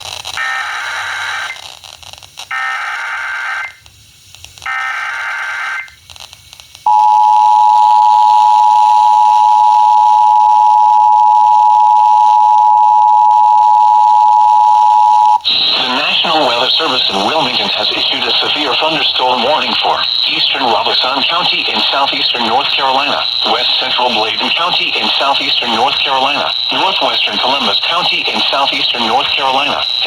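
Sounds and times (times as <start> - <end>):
warbling digital data bursts: 15.4 - 30.0.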